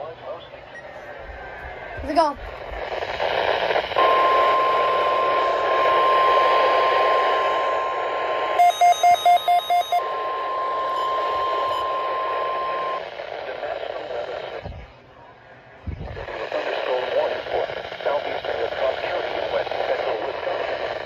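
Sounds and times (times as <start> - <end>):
radio static: 0.0 - 21.0
steady high alarm tone: 3.9 - 13.3.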